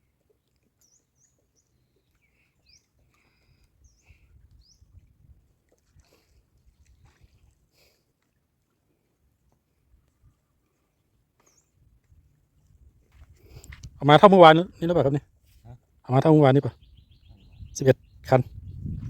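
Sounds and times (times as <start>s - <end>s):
faint birds chirping: 0.0s - 5.2s, 9.9s - 12.2s, 13.4s - 19.0s.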